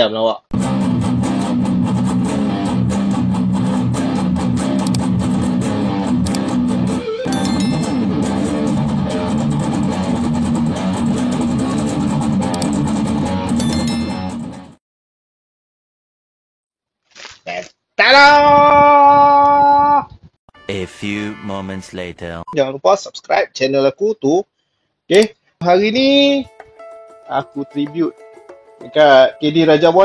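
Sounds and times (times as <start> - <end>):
plucked strings theme music: 7.2 - 9.0, 13.6 - 14.5, 20.6 - 22.4, 25.7 - 30.0.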